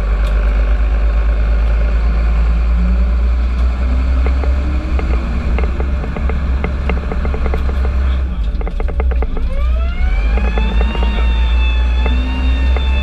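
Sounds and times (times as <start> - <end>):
fire engine rumbling: 0.0 - 13.0
light clicks and rattles: 4.2 - 9.7.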